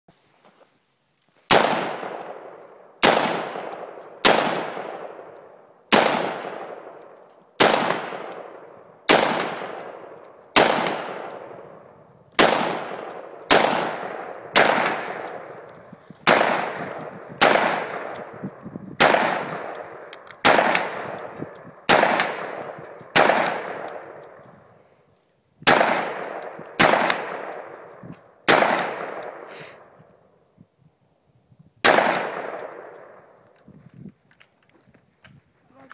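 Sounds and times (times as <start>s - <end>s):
rifle shots with echo: 1.5s - 24.4s, 25.6s - 29.9s, 31.8s - 33.4s.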